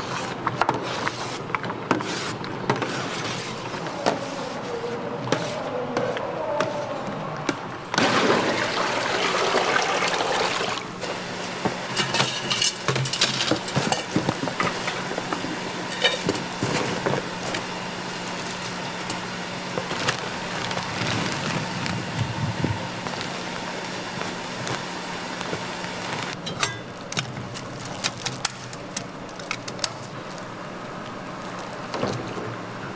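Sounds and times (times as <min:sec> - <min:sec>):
liquid pouring: 0:08.0 - 0:10.9
metal utensils clinking: 0:11.9 - 0:14.2, 0:15.9 - 0:16.3.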